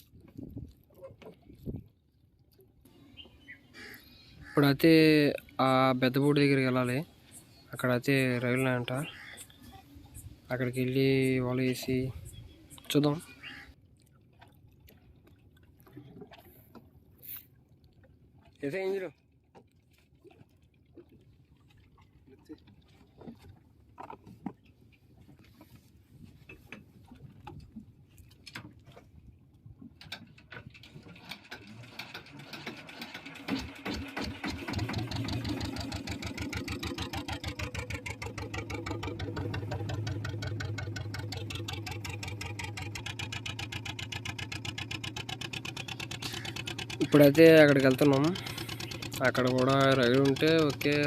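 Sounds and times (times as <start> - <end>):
knocks and clatter on boat: 0.0 - 2.0, 19.5 - 51.0
boat engine chugging: 2.9 - 13.8, 30.2 - 51.0.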